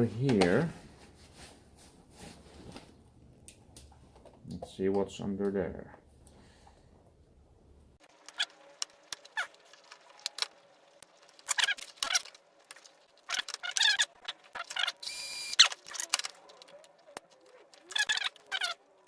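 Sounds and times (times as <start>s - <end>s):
screws squeaking: 17.7s - 18.8s.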